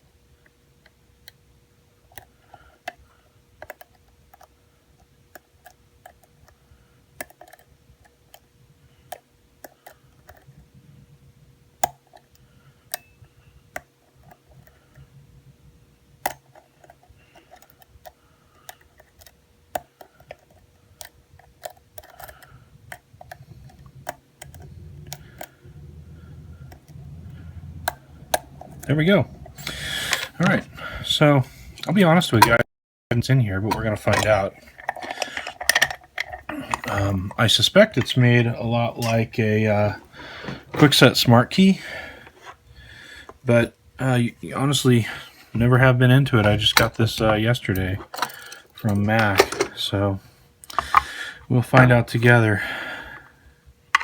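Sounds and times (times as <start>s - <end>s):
low rumble: 23.6s - 31.2s
lock pick clicking: 29.5s - 30.4s.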